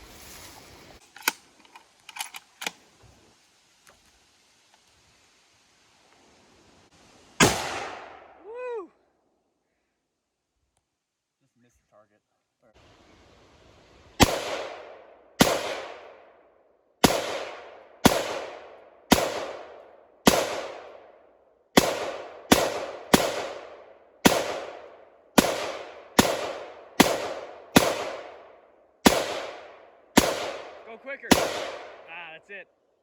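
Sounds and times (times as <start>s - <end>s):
rifle shots echoing: 7.4s - 8.4s, 14.2s - 16.4s, 17.0s - 32.4s.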